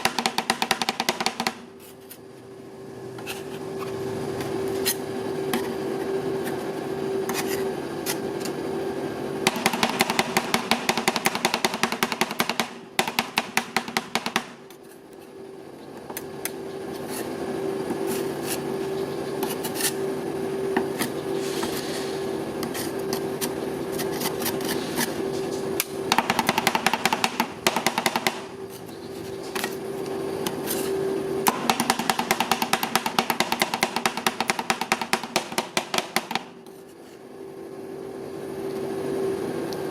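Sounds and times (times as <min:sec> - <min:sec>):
steady hum: 0:00.0 - 0:39.9
spatula scraping ice cream: 0:18.0 - 0:20.1, 0:22.6 - 0:25.2.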